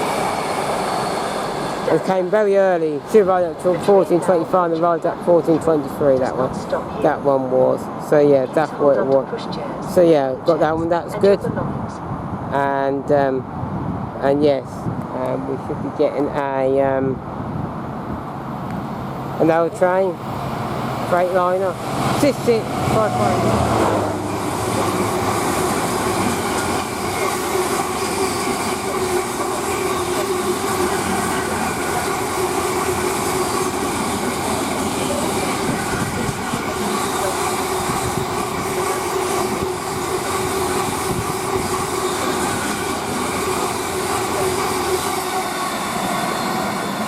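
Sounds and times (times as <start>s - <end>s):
freight train rumbling past: 0.0s - 47.0s
rail clatter: 20.2s - 47.0s.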